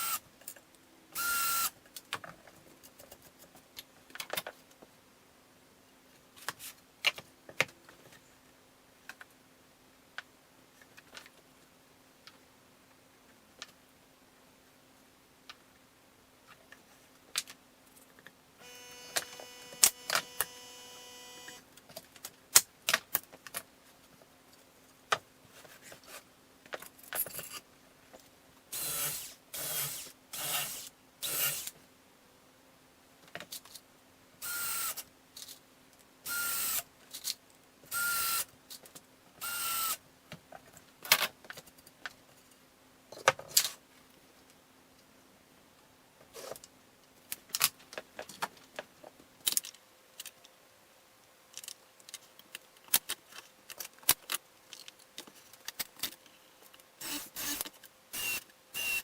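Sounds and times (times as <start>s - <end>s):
small power tool bursts: 1.2s - 1.7s, 18.6s - 21.6s, 28.8s - 31.7s, 34.4s - 35.0s, 36.3s - 36.8s, 37.9s - 38.5s, 39.4s - 40.0s, 57.0s - 59.0s.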